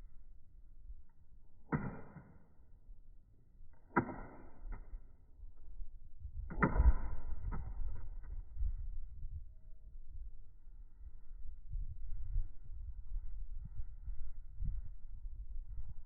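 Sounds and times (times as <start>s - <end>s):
low rumble: 4.5s - 16.0s.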